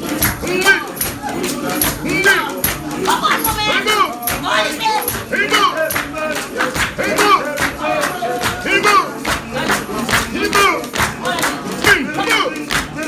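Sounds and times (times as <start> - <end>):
congregation singing and calling out: 0.0 - 13.0
steady percussive beat: 0.0 - 13.0.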